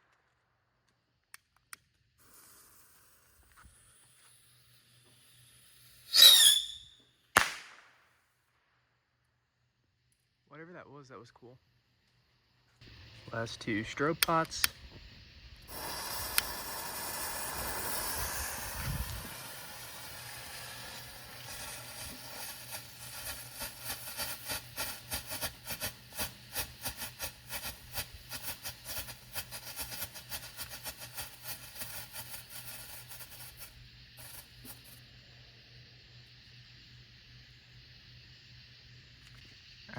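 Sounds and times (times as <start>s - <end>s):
fireworks crackling pops: 0.0s - 8.7s, 12.0s - 35.1s
fireworks hissing: 2.1s - 8.0s, 12.4s - 39.9s.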